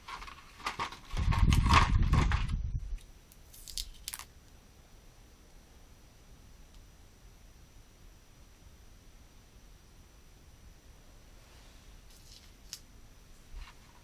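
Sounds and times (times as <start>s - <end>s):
plastic toy pieces and packaging handled: 0.0s - 4.3s, 12.1s - 12.9s.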